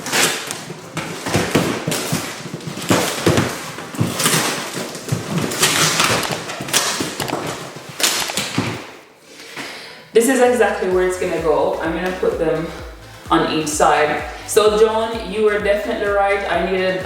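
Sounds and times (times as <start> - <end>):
packaging crackling and rustling: 0.0 - 9.1.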